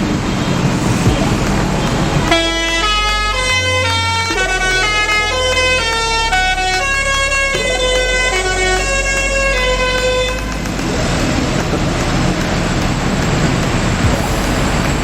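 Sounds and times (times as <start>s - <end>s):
low rumble: 0.0s - 15.0s
rushing hiss: 0.6s - 3.2s, 14.0s - 15.0s
bus horn playing multi-note tune: 1.3s - 10.6s.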